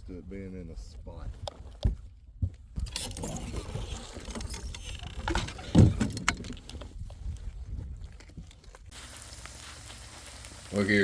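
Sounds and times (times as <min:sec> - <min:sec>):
boat gear knocking and clattering: 0:02.8 - 0:06.9.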